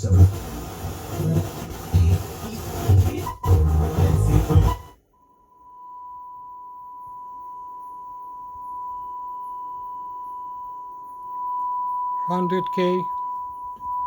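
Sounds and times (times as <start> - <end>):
sine-wave test tone: 5.0 - 14.0.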